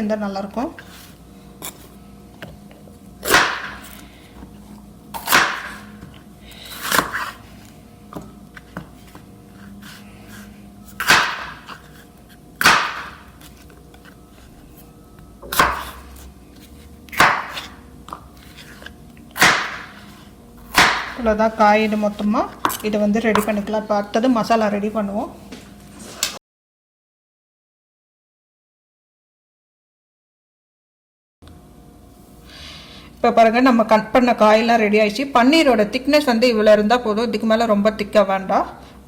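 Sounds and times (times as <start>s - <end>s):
knife chopping on cutting board: 3.2s - 4.0s, 5.2s - 6.1s, 6.7s - 7.4s, 11.0s - 11.9s, 12.6s - 13.6s, 15.4s - 16.1s, 17.1s - 18.8s, 19.4s - 21.4s.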